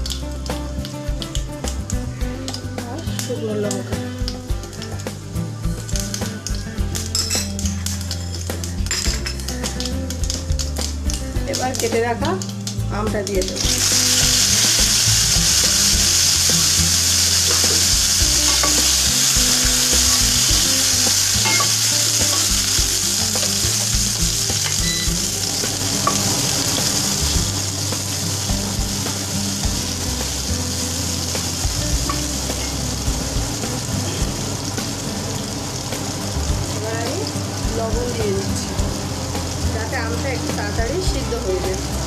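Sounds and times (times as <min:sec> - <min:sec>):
food sizzling in oil: 0:00.0 - 0:42.0.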